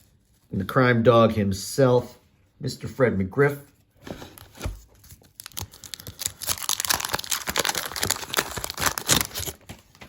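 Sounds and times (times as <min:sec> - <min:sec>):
wax paper wrapper tearing and crinkling: 0:04.8 - 0:09.7.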